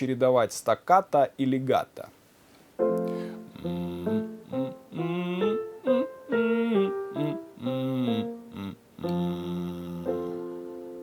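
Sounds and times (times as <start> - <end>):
instrumental pitched notes: 2.8 - 11.0.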